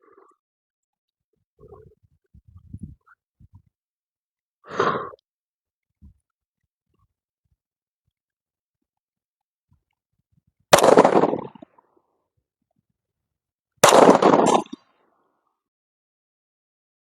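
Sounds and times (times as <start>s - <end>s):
pistol shots with echo: 10.8s - 11.6s, 13.8s - 14.8s.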